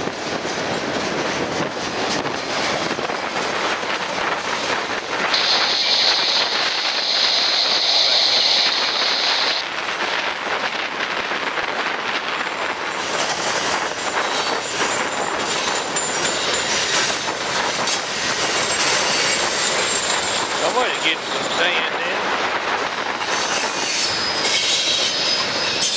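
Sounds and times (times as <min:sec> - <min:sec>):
strong wind: 0:00.0 - 0:25.9
train wheels clattering: 0:00.0 - 0:25.9
high wheel squeal: 0:17.9 - 0:21.6, 0:23.3 - 0:25.9.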